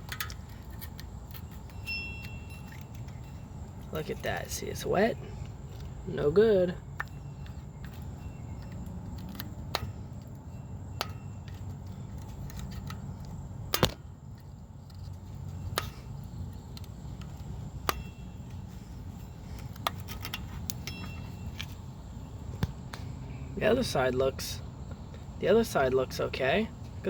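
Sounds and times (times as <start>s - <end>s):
low background hum: 0.0s - 27.0s
sharp clicks and light knocks: 6.9s - 21.8s.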